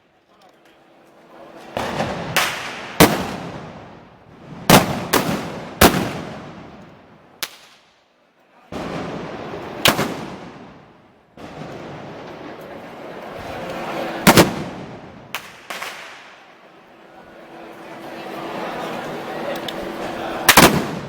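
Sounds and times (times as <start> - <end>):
gunshots with long echo: 1.8 - 4.0, 4.6 - 6.8, 8.8 - 12.4, 14.2 - 16.5, 20.5 - 21.0.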